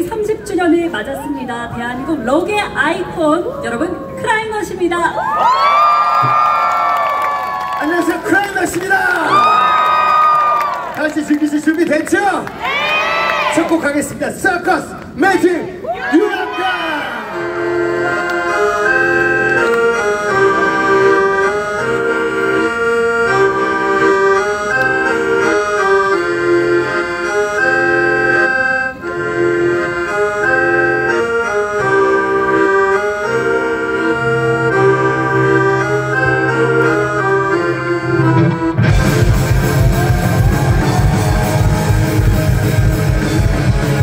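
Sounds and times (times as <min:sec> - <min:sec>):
accordion playing lively melody: 0:17.1 - 0:44.0
low bass line: 0:17.5 - 0:44.0.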